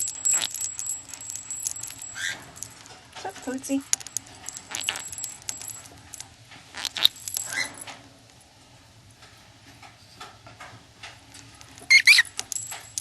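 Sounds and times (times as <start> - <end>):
bird moving in cage: 0.0 - 8.0.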